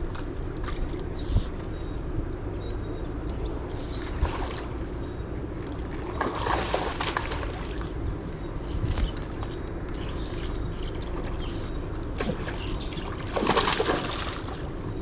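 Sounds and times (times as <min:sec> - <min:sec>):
water splashing: 0:05.8 - 0:08.0, 0:12.1 - 0:15.0.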